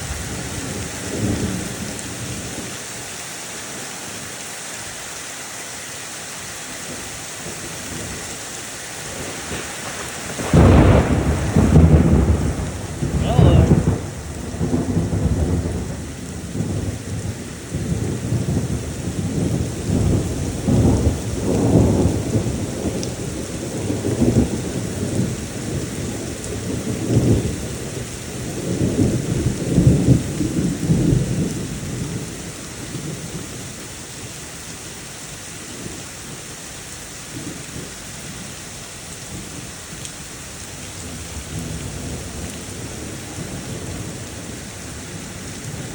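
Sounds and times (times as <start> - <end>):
steady rain: 0.0 - 45.9
thunder rumbling: 7.4 - 33.6.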